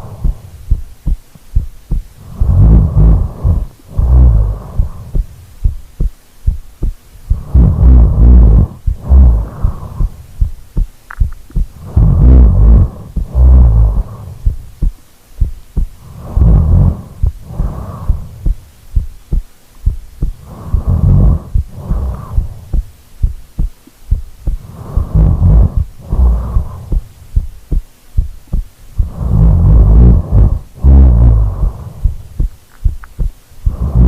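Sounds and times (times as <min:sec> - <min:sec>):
person snoring loudly: 0:02.2 - 0:05.2, 0:07.3 - 0:10.2, 0:11.8 - 0:14.4, 0:16.0 - 0:18.4, 0:20.4 - 0:22.6, 0:24.6 - 0:27.0, 0:29.0 - 0:32.2, 0:33.7 - 0:34.0
small irregular clicks: 0:11.0 - 0:11.7, 0:32.4 - 0:33.4.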